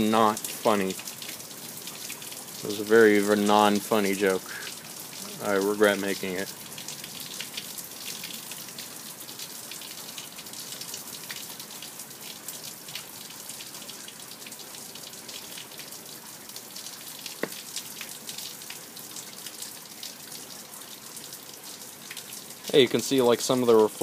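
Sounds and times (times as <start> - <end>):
rain falling: 0.0 - 24.0
sharp tap: 17.4 - 17.6.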